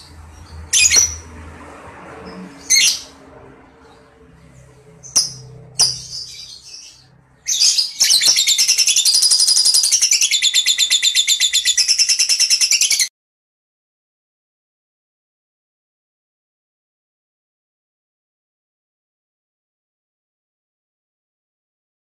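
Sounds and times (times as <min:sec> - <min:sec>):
lovebird chattering trill: 0:05.0 - 0:13.1
lovebird sharp chirps: 0:05.0 - 0:13.1.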